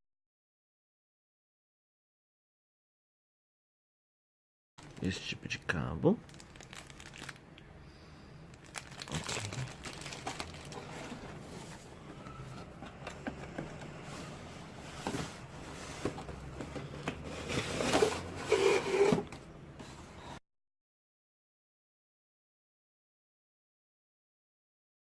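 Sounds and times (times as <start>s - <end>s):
plastic packaging crinkling: 4.8s - 7.4s, 8.5s - 11.9s.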